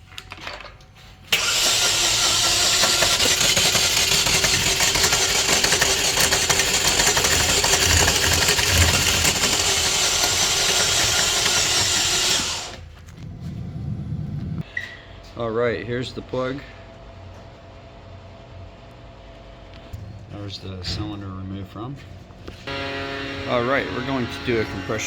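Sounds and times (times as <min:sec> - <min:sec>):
car engine cranking: 0:01.3 - 0:12.9.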